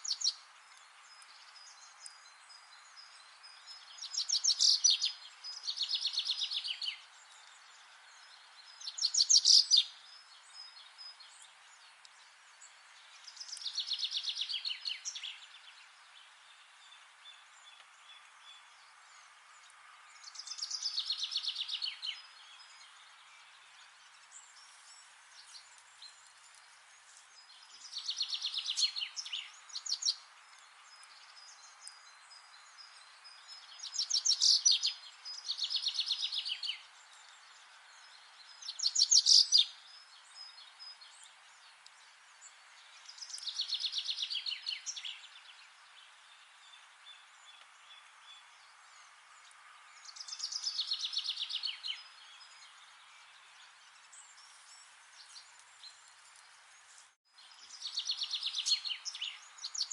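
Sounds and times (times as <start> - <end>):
faint background hiss: 0.0 - 59.9.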